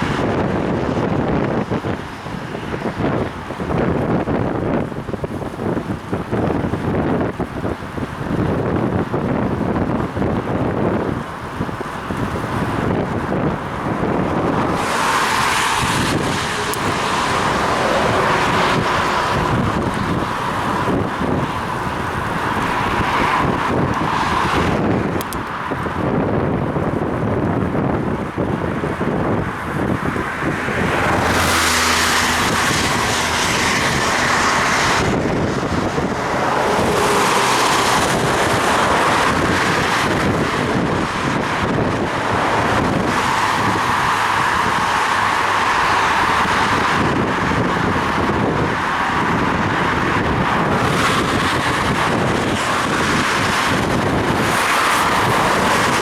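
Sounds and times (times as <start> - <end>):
car traffic passing: 0.0 - 56.0
vehicle engine humming: 0.0 - 56.0
wind buffeting microphone: 0.0 - 56.0
tyres hissing on wet road: 11.9 - 25.8, 30.0 - 56.0.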